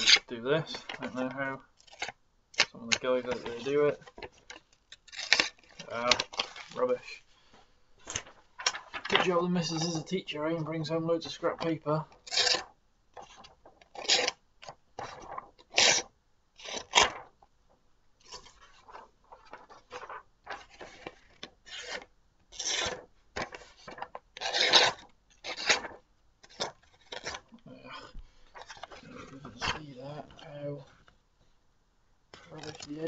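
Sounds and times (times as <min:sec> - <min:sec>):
knife ripping paper: 0:05.1 - 0:05.7, 0:12.2 - 0:12.7, 0:15.2 - 0:17.2, 0:22.6 - 0:23.0, 0:23.8 - 0:27.4.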